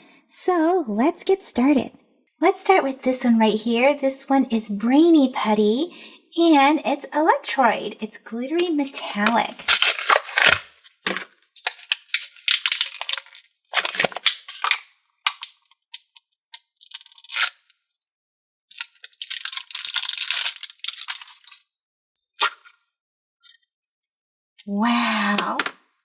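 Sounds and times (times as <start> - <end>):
putty crackling and popping: 9.3 - 10.7, 11.7 - 17.8, 18.7 - 21.6.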